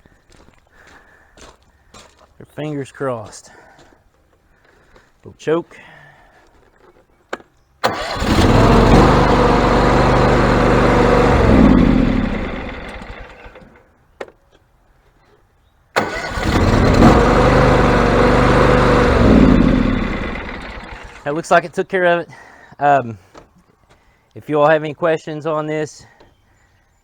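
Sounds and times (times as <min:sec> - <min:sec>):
engine starter cranking: 0:07.8 - 0:13.8, 0:16.0 - 0:21.5
tractor engine starting and running: 0:07.8 - 0:14.0, 0:15.9 - 0:22.2.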